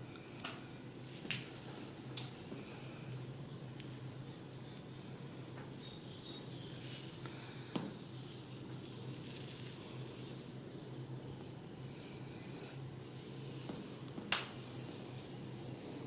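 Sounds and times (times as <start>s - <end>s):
low steady hum: 0.0s - 16.0s
hands rubbing hair and skin: 6.7s - 7.3s, 7.9s - 10.6s, 13.0s - 16.0s.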